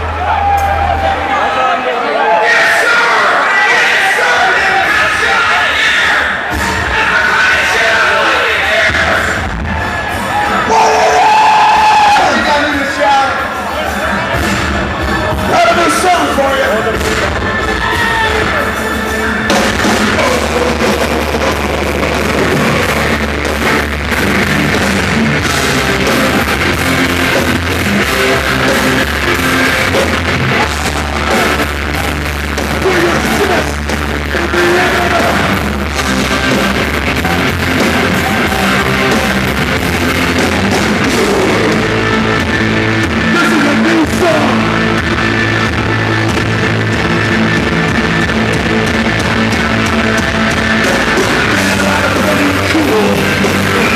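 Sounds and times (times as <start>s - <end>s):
bass guitar: 0.0s - 1.7s, 4.5s - 53.9s
distorted electric guitars: 0.0s - 53.9s
drum kit: 6.5s - 53.9s
person singing: 50.9s - 53.9s.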